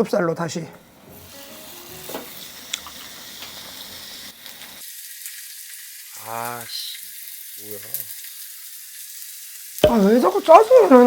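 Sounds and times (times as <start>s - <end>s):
meat sizzling on a grill: 0.4s - 11.0s
thin high hiss: 0.9s - 4.8s
fat popping: 9.8s - 11.0s
person speaking: 9.8s - 11.0s.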